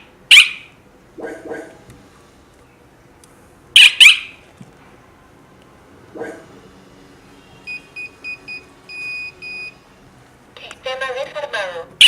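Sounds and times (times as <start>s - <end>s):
alarm siren chirps: 0.3s - 0.8s, 3.8s - 4.4s.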